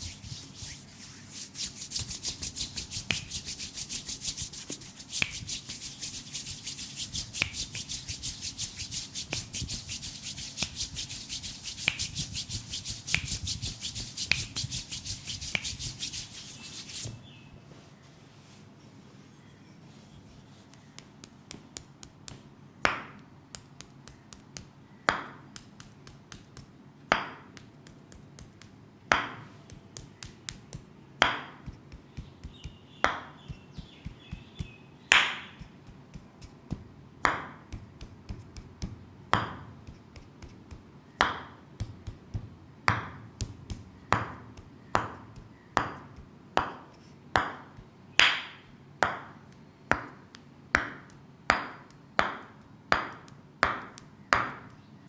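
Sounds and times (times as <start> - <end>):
light massage taps: 0.0 - 17.2, 20.6 - 54.8
massage slaps on leg: 0.0 - 17.2, 20.7 - 54.8.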